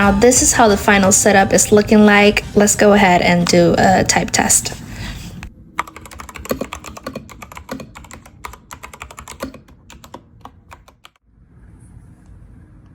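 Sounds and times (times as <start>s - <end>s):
mechanical keyboard key clacks: 5.8s - 11.2s.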